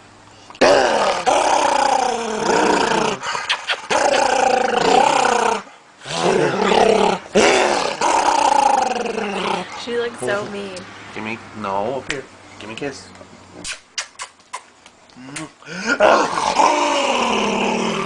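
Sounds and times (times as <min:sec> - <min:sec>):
dog growling: 0:00.6 - 0:10.7, 0:15.8 - 0:18.0.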